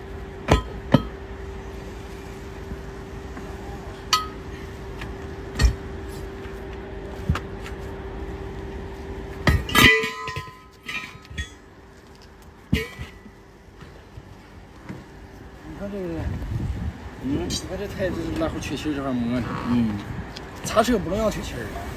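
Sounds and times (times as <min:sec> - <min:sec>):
steady hum: 0:00.0 - 0:19.4
metal tools knocking and clinking: 0:04.1 - 0:04.5, 0:05.5 - 0:05.8, 0:09.4 - 0:11.6, 0:12.7 - 0:13.4.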